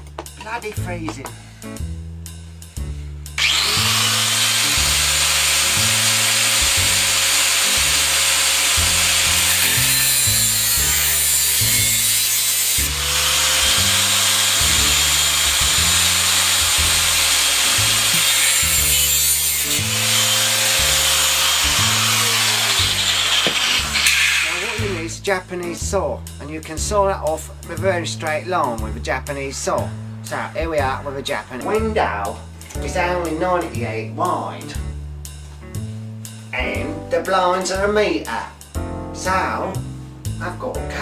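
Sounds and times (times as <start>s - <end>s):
background music with bass line: 0.0s - 41.0s
power tool running under load: 3.4s - 25.0s.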